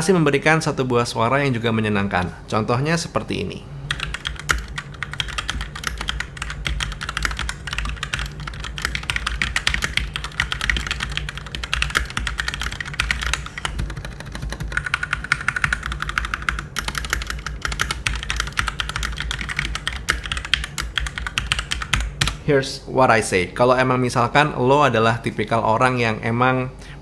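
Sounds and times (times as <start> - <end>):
mechanical keyboard typing: 3.9 - 22.4.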